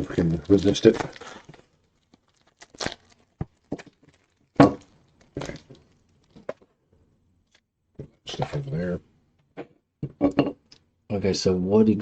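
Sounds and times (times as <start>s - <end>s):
candy wrapper crinkling and tearing: 0.0s - 6.4s.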